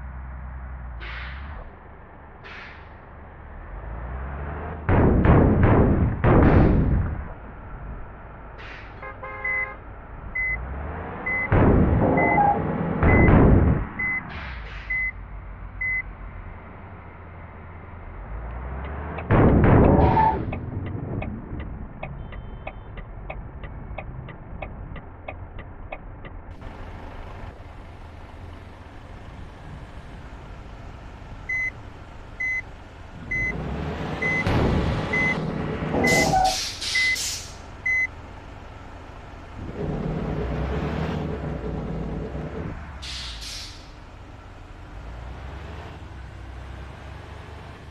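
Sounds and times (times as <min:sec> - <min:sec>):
bus engine running: 0:00.0 - 0:47.9
reversing beeper: 0:12.1 - 0:13.3, 0:36.0 - 0:37.2
air brake hiss: 0:36.3 - 0:37.6, 0:43.0 - 0:43.9.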